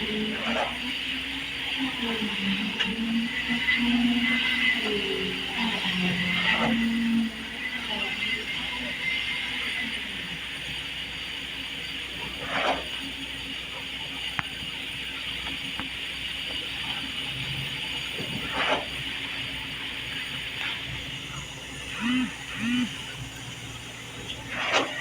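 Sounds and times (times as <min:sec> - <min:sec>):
mechanical whirring: 0:17.3 - 0:25.0.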